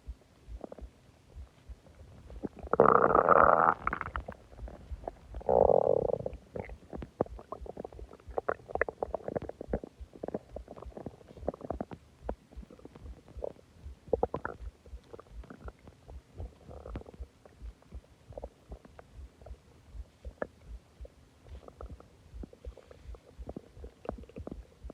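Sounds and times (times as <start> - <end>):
stomach rumbling and gurgling: 0.0 - 24.9.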